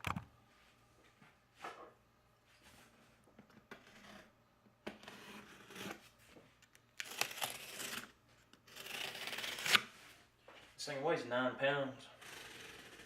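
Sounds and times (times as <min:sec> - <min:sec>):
cardboard packaging rustling and tearing: 0:07.0 - 0:08.1.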